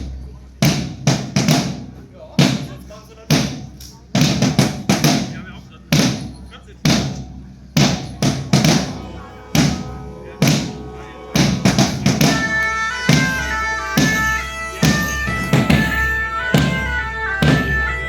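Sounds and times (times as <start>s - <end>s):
slow steady drumbeat: 0.0s - 18.0s
bagpipe melody: 8.2s - 18.0s.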